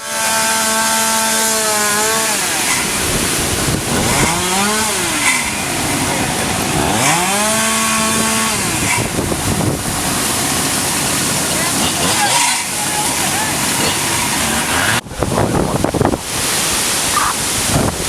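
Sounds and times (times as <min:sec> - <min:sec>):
chainsaw revving: 0:00.0 - 0:15.0.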